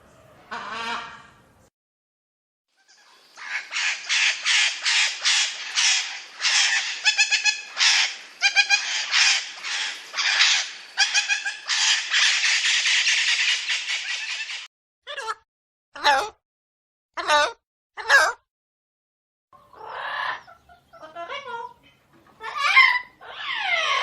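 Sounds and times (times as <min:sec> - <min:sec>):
parrot screeching: 0:03.4 - 0:15.3, 0:17.2 - 0:18.4, 0:22.4 - 0:24.0.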